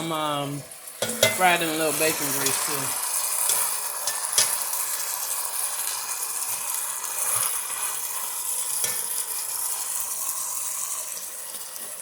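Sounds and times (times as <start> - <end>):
meat sizzling in grease: 0.0 - 12.0
utensil clicking against pot: 3.4 - 4.7.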